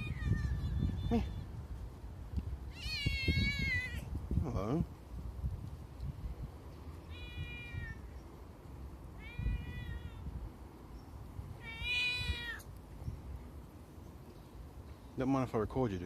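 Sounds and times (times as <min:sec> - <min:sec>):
cat meowing: 0:00.0 - 0:01.4, 0:02.7 - 0:04.1, 0:07.1 - 0:08.1, 0:09.2 - 0:10.3, 0:11.6 - 0:12.7.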